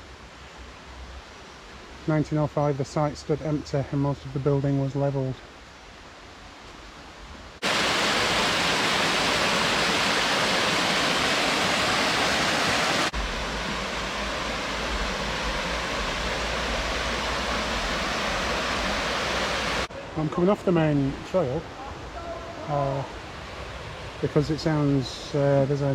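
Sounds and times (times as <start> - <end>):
river water rushing: 5.4 - 25.9
deep water rumble: 13.1 - 19.9.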